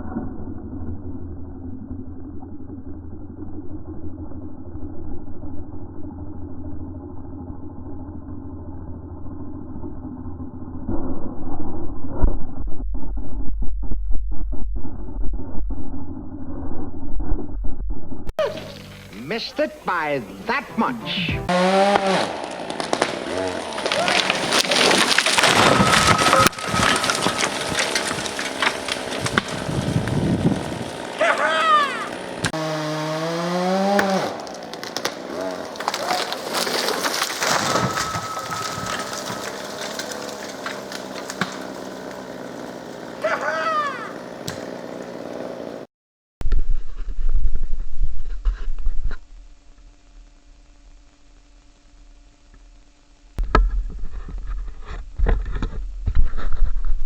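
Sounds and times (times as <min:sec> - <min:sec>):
treetop crashing through branches: 0:21.5 - 0:32.5, 0:33.8 - 0:43.8
wood cracking and splintering: 0:21.5 - 0:45.8
muffled chainsaw engine idling: 0:26.2 - 0:35.7, 0:39.1 - 0:45.9.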